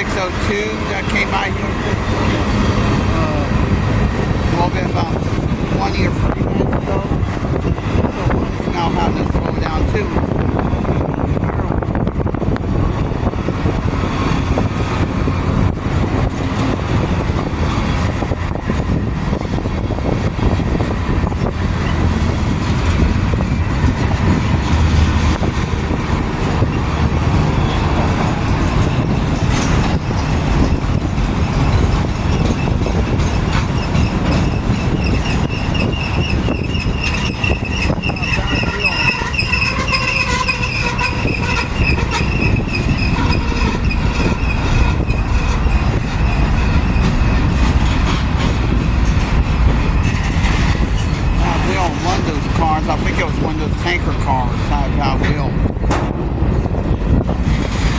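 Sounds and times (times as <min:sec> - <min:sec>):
freight train cars rumbling: 0:00.0 - 0:57.9
high wavering squeal: 0:33.8 - 0:47.4.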